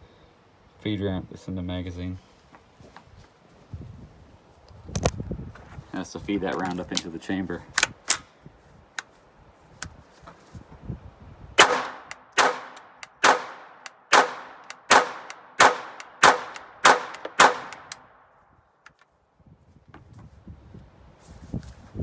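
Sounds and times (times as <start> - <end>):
pistol shots: 11.6 - 18.0.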